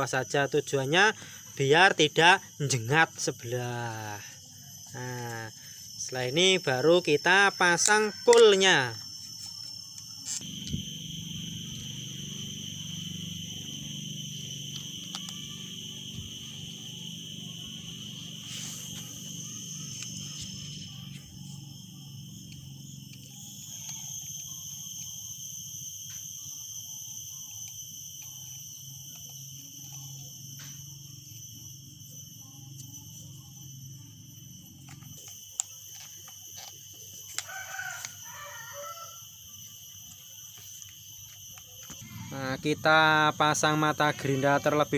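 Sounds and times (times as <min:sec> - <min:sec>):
high-pitched insect-like drone: 0:00.0 - 0:44.9
rooster crowing: 0:37.3 - 0:39.6.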